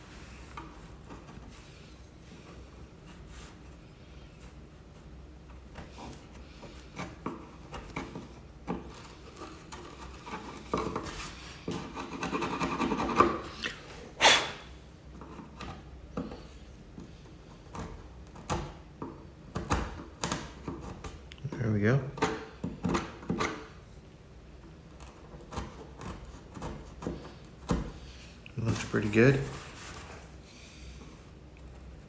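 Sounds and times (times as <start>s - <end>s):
chisel scraping wood: 5.8s - 15.6s.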